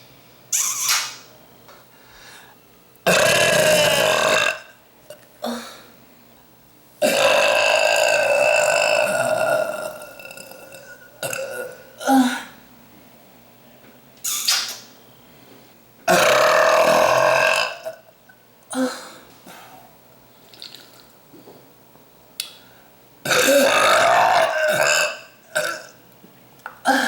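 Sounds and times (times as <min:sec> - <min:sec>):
woman belching: 0:03.1 - 0:04.7, 0:07.0 - 0:12.2, 0:16.1 - 0:18.0, 0:23.3 - 0:26.0.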